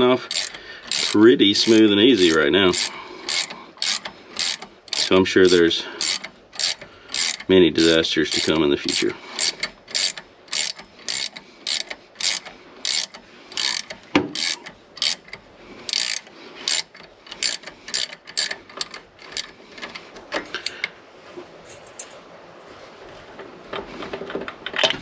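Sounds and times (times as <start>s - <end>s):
ratcheting wrench clicking: 0.0s - 20.0s.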